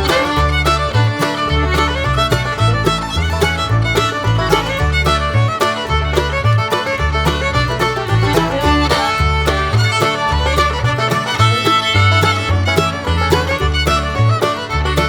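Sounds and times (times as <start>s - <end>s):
steady beat: 0.0s - 15.0s
upbeat fiddle tune: 0.0s - 15.0s
walking bass line: 0.0s - 15.0s.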